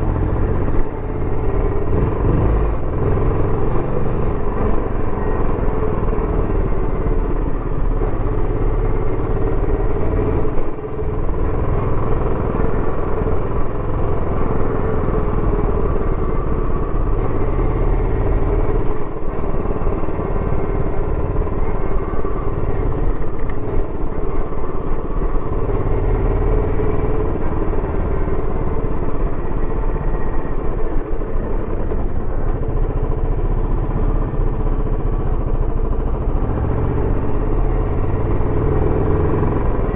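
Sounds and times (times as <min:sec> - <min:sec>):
motorcycle engine revving: 0:00.0 - 0:07.3, 0:36.2 - 0:39.9.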